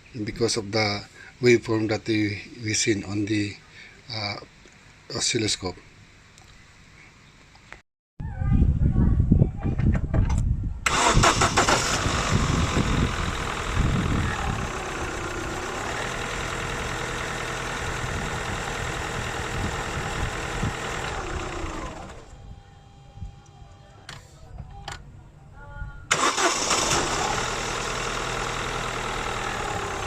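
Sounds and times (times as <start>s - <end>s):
car engine cranking and starting: 10.8s - 22.4s, 26.1s - 30.0s
car engine running: 11.6s - 22.3s, 26.6s - 30.0s.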